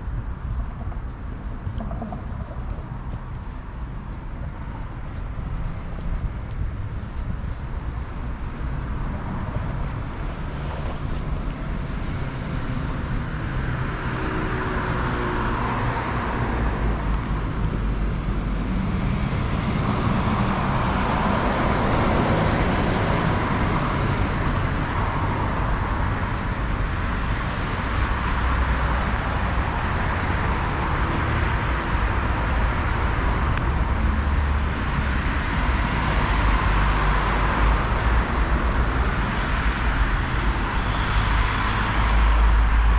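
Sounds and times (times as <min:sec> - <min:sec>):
cars passing: 0:00.0 - 0:42.9
low traffic rumble: 0:00.0 - 0:42.9.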